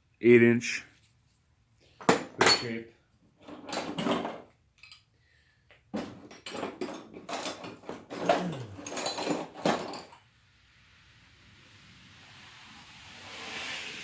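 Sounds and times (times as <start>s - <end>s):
metal hand tools clattering: 3.4s - 5.0s, 6.0s - 10.2s.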